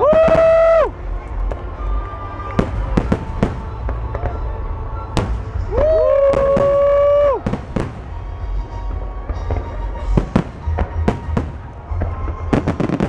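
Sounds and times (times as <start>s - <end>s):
fireworks bursting: 0.0s - 13.0s.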